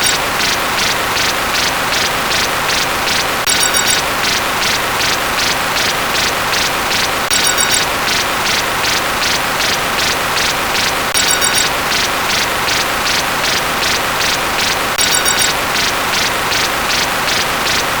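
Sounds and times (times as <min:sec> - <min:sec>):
bright cluster of high tones: 0:00.0 - 0:00.4, 0:03.5 - 0:04.3, 0:07.3 - 0:08.1, 0:11.2 - 0:12.2, 0:15.0 - 0:15.8.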